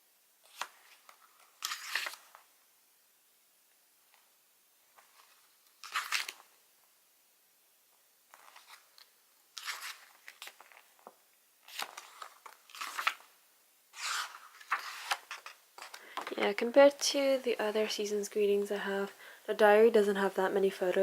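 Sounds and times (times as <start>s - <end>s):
paper pages rustling: 0.4s - 2.5s, 4.9s - 6.5s, 8.3s - 16.6s.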